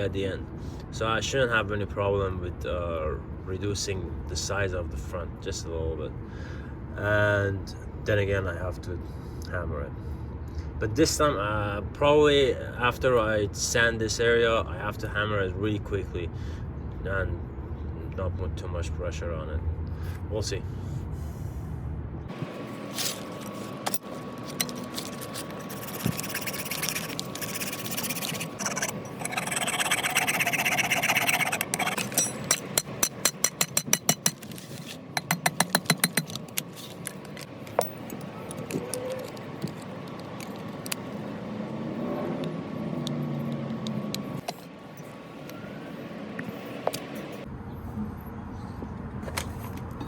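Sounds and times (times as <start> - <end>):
metal being filed and sanded: 25.4 - 33.8.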